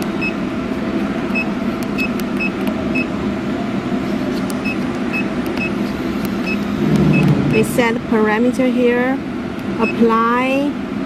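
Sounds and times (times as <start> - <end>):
steady machine hum: 0.0 - 11.0
electronic keypad beeps: 0.2 - 0.4, 1.3 - 3.1, 4.6 - 7.7, 9.8 - 10.1.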